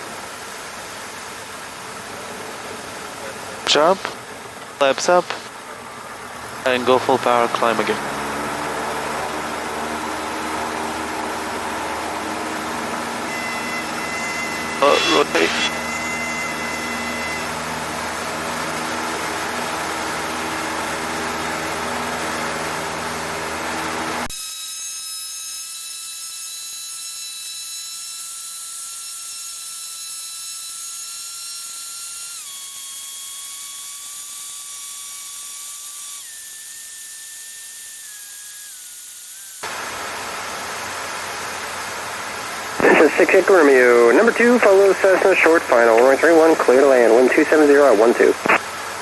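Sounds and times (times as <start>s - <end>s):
aircraft engine roaring: 0.1s - 24.3s, 39.7s - 49.0s
high whine dropping in pitch: 6.7s - 17.6s.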